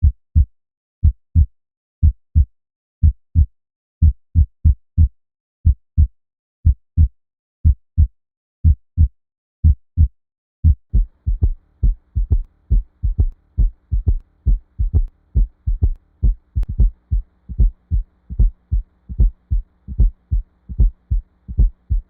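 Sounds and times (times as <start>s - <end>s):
heartbeat thumps: 0.0s - 5.1s, 5.7s - 22.0s
faint steady hum: 10.9s - 22.0s.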